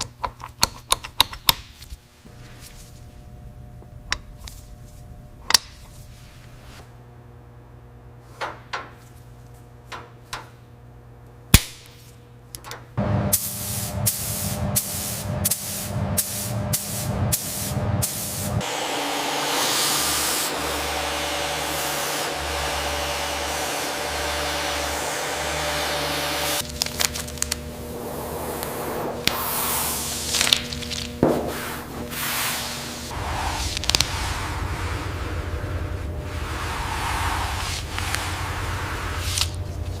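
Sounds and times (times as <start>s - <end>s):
low hum: 2.1s - 8.3s, 12.2s - 18.9s, 20.1s - 40.0s
steady hissing: 27.8s - 39.8s.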